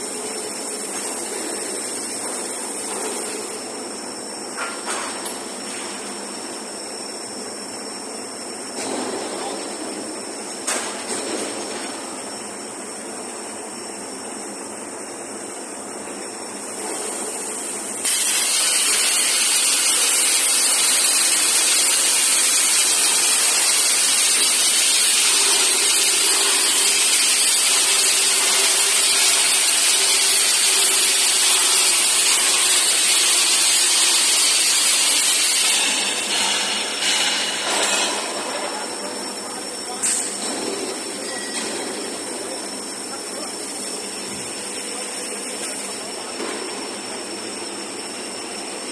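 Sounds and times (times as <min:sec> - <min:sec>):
loud hiss: 0:16.7 - 0:38.3
cutting torch hissing: 0:16.7 - 0:38.9.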